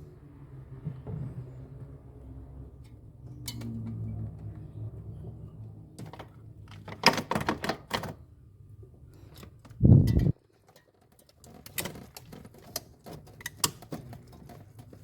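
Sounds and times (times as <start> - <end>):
clicks and scrapes of hand work: 9.2 - 15.0.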